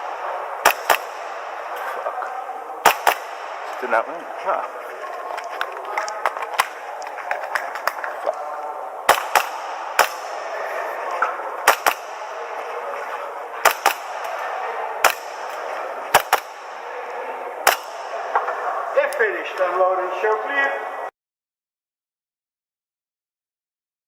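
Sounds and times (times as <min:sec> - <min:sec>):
airsoft pistol shots: 0:00.1 - 0:02.0, 0:02.8 - 0:03.9, 0:09.1 - 0:10.7, 0:11.6 - 0:12.4, 0:13.6 - 0:14.4, 0:15.0 - 0:16.7, 0:17.6 - 0:18.1.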